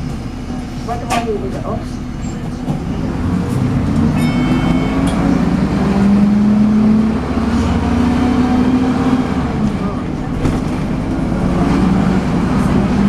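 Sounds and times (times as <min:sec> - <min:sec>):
diesel bus engine whining: 0:00.0 - 0:13.0
brief high-pitched tone: 0:04.2 - 0:05.7.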